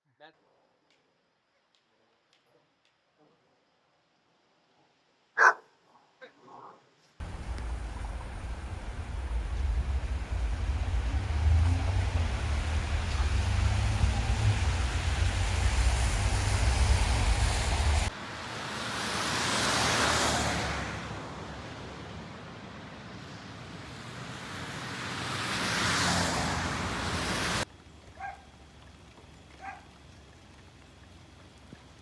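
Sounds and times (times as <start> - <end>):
dog barking: 5.4 - 5.8, 28.2 - 28.5, 29.6 - 29.9
low wind rumble: 7.2 - 18.4
tyres swishing on wet road: 7.2 - 32.0.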